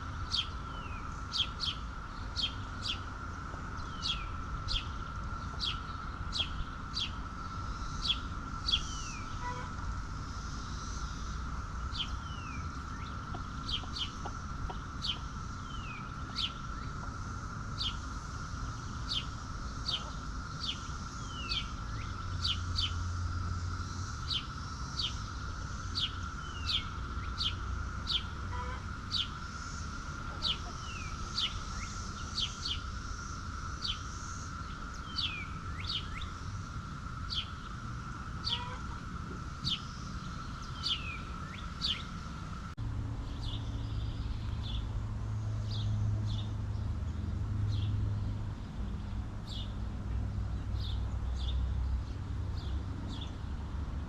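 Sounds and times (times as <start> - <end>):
small bird chirping: 10.5 - 17.2, 17.8 - 23.2, 23.8 - 36.6, 38.4 - 42.3.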